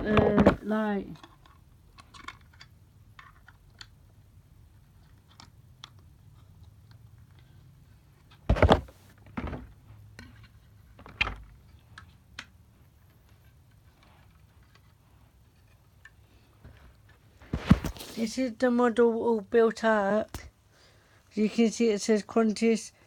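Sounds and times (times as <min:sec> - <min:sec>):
plastic knocks: 0:08.5 - 0:09.7.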